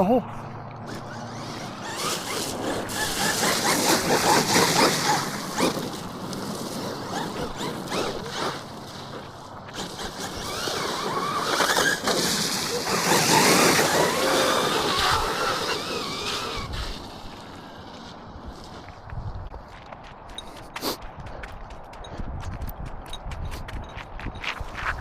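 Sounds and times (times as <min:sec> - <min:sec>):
rc car splashing through mud: 0:00.8 - 0:18.4
electric motor whine: 0:09.7 - 0:17.8.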